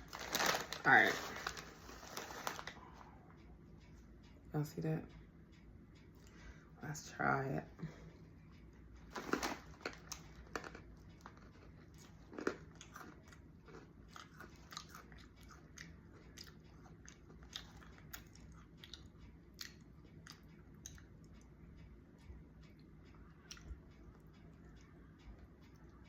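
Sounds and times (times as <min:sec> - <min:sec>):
person crunching snack chips: 0:00.0 - 0:02.8, 0:09.2 - 0:15.6.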